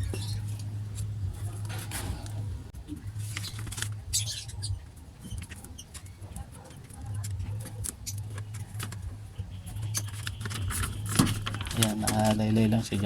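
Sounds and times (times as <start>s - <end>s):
low hum: 0.0s - 5.3s
hands handling wiring and parts: 3.1s - 4.3s, 5.2s - 13.0s.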